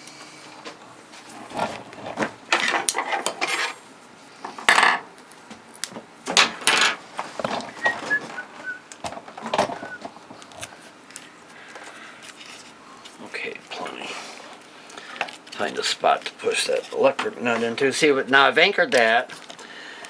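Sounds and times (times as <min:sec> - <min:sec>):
clattery handling of parts: 0:01.3 - 0:03.8.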